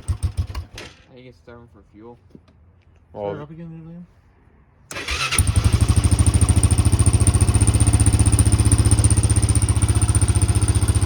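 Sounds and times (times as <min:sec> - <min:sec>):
electric starter cranking: 0:04.9 - 0:06.3
motorcycle engine running: 0:05.0 - 0:11.0.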